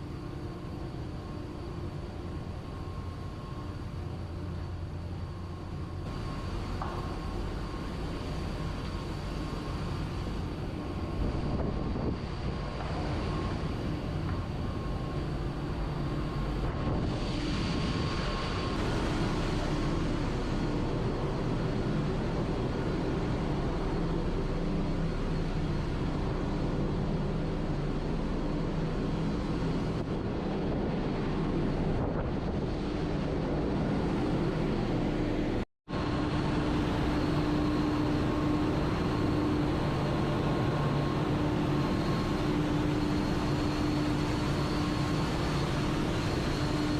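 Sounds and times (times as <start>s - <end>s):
engine room machinery hum: 0.0s - 46.9s.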